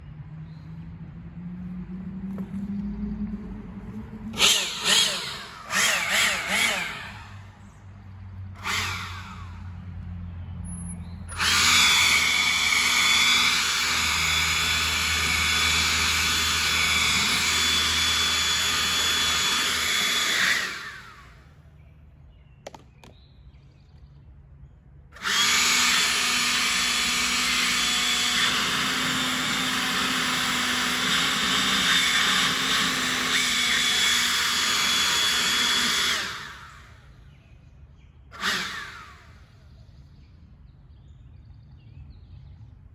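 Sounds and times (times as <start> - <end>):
power tool motor whining: 3.9 - 10.2, 11.2 - 21.6, 25.2 - 37.3, 38.3 - 39.6.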